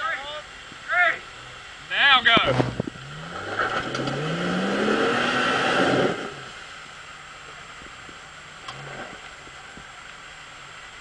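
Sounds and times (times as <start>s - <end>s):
car engine idling: 0.0s - 11.0s
car engine revving: 2.4s - 7.3s.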